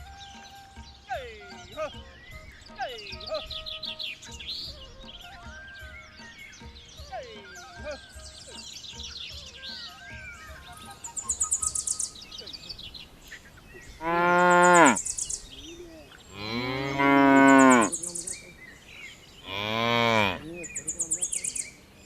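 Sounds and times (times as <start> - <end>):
high rapid rhythmic chirping: 10.2 - 12.4
cow mooing: 14.0 - 15.0, 16.3 - 18.0, 19.4 - 20.6.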